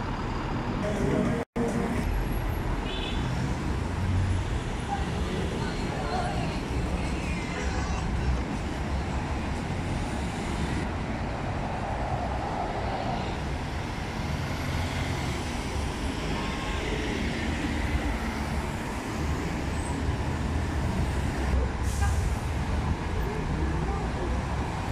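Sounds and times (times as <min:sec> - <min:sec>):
road traffic passing: 0:00.0 - 0:24.9.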